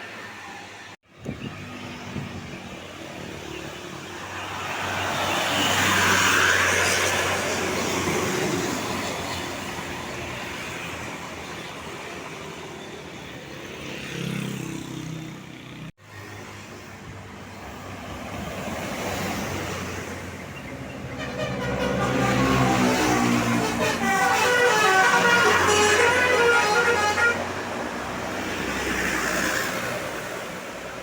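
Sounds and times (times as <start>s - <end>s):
buses driving past: 0.0s - 31.0s
multi-tone bus horn tune: 21.0s - 27.8s.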